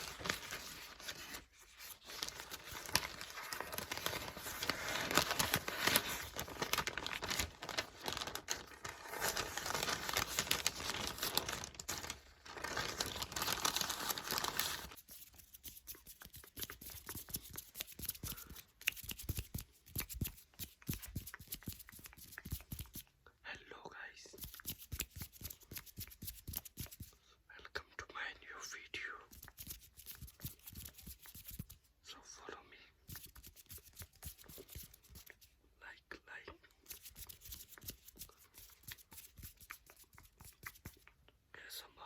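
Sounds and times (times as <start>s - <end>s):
book pages flipping: 0.0s - 23.0s, 36.9s - 41.2s.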